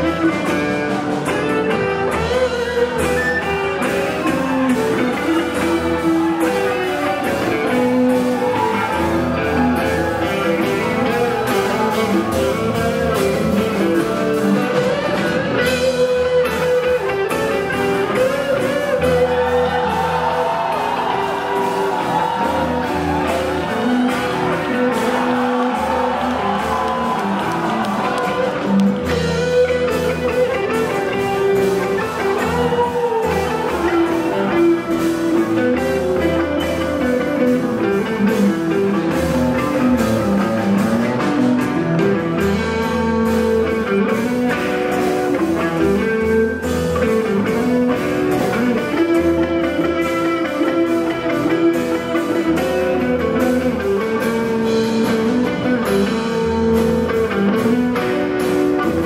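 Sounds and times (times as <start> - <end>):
bass guitar: 0.0 - 59.0
drums: 0.0 - 59.0
electric guitar: 0.0 - 59.0
rock band playing: 0.0 - 59.0.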